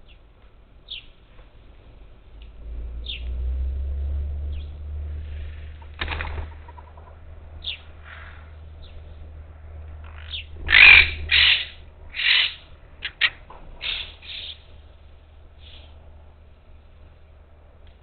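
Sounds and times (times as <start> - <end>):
low rumble: 1.4 - 18.0
high falling bird chirps: 5.5 - 14.9.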